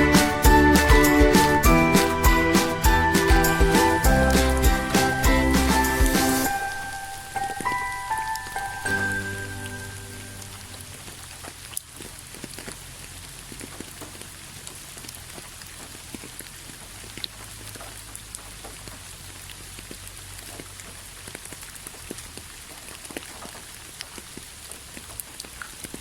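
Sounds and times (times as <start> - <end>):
steady rain falling: 0.0 - 26.0
raindrops ticking on a surface: 6.0 - 26.0.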